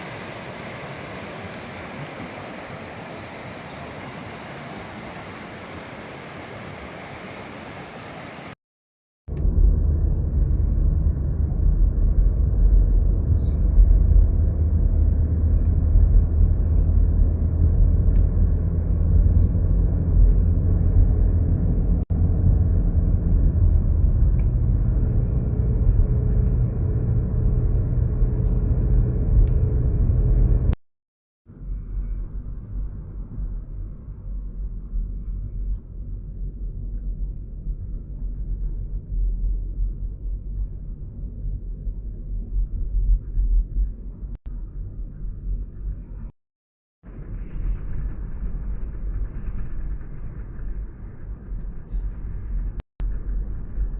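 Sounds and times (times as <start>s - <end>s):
river rushing: 0.0s - 8.6s.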